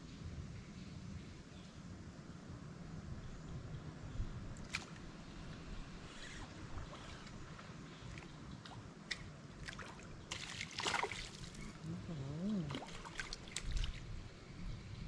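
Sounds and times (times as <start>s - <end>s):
water sloshing and splashing: 6.4s - 14.2s.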